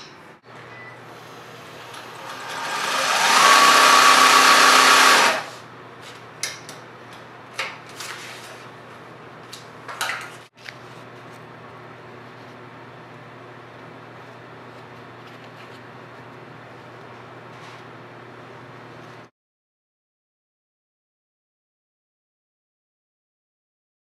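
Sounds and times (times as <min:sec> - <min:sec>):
small electric motor running: 0:01.6 - 0:05.6.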